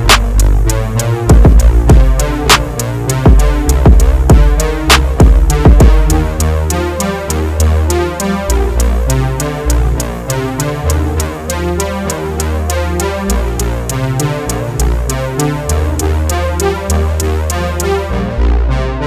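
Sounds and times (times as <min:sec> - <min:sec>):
ticking beat: 0:00.0 - 0:17.9
deep bass line: 0:00.0 - 0:19.0
synthesizer melody: 0:00.0 - 0:19.0
heavy drum hits: 0:01.3 - 0:06.4.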